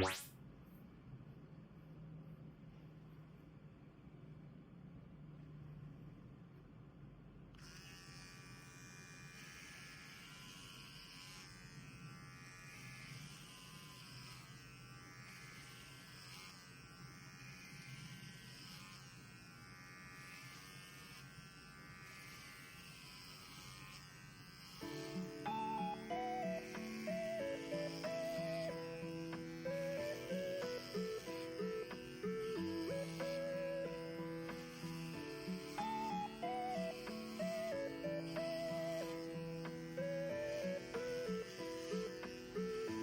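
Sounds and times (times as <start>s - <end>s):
electric hair clipper buzzing: 0.0s - 0.3s, 7.6s - 43.0s
background music: 24.8s - 43.0s.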